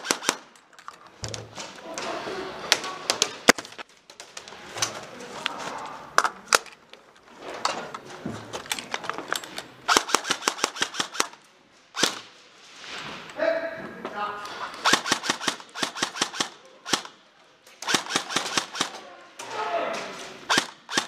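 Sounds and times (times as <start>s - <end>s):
airsoft gun shots: 9.9s - 11.4s, 12.0s - 12.3s, 17.8s - 19.0s, 20.5s - 21.0s.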